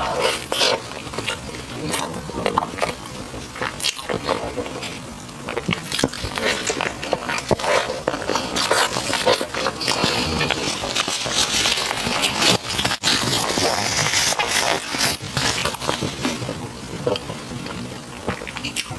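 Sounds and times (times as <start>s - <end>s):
chewing sticky food: 0.0s - 18.9s.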